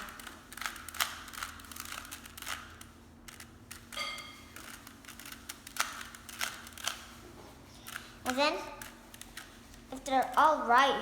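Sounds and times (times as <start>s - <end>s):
puzzle cube twisting clicks: 0.0s - 3.9s, 4.6s - 7.0s.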